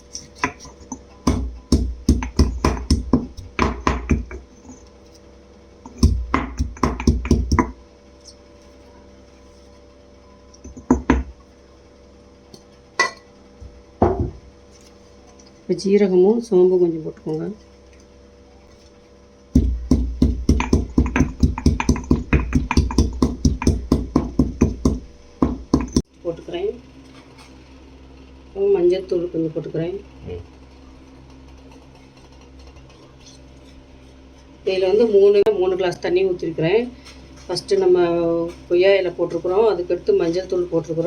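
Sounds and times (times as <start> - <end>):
pestle pounding in mortar: 0.0 - 4.5, 5.9 - 7.8, 10.6 - 11.4, 19.6 - 26.1
faint steady hum: 0.0 - 41.0.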